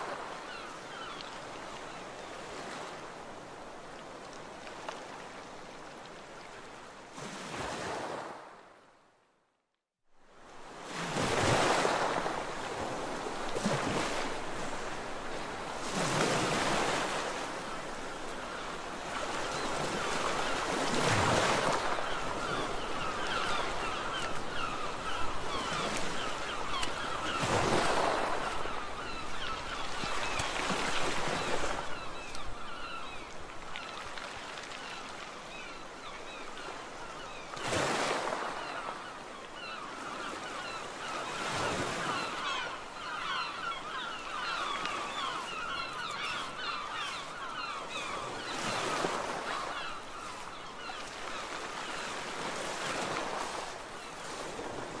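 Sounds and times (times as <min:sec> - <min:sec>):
sea waves breaking on beach: 0:00.0 - 0:08.8, 0:10.3 - 0:55.0.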